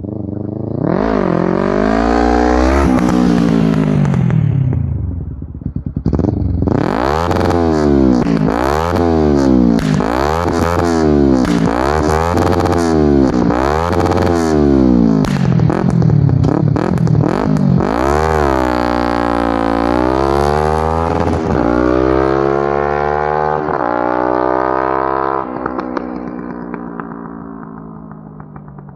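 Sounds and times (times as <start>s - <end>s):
motorcycle engine idling: 0.0s - 0.9s, 2.5s - 6.8s, 25.7s - 28.9s
motorcycle engine revving: 0.0s - 28.9s.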